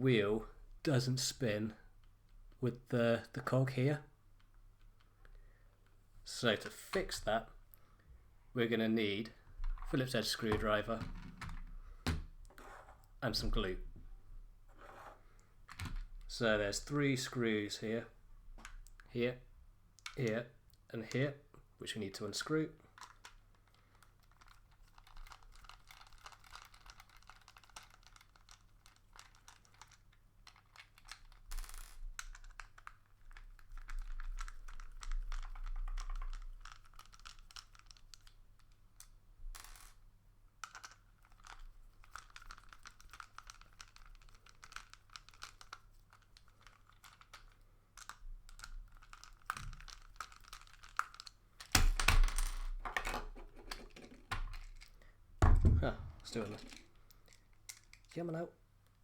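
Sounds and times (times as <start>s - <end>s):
plastic parts clattering: 40.6s - 58.2s.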